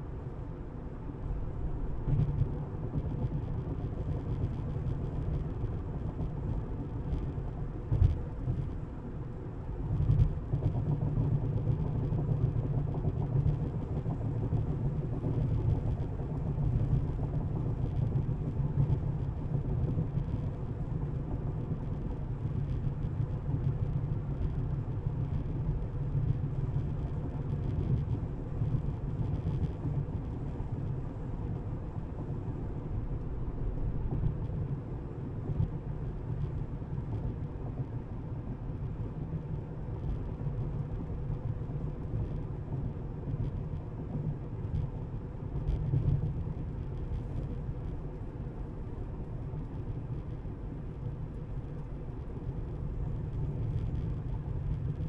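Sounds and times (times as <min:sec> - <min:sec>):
road and tyre noise: 0:00.0 - 0:55.0.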